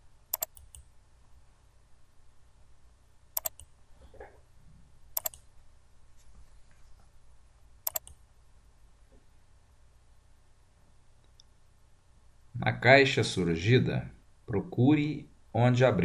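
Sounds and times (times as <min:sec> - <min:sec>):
low room hum: 0:00.0 - 0:16.0
computer mouse button clicks: 0:00.3 - 0:00.8, 0:03.4 - 0:03.7, 0:05.2 - 0:05.4, 0:07.9 - 0:08.2.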